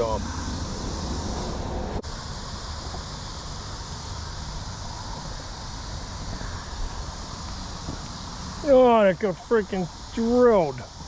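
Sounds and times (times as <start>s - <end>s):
low rumble: 0.0s - 2.6s
even hiss: 0.0s - 11.0s.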